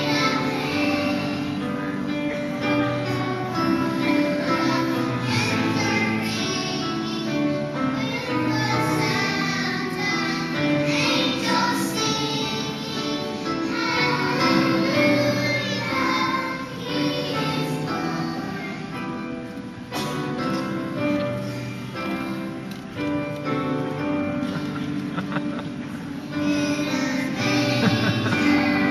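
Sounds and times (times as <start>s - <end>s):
children's choir singing: 0.0s - 28.9s.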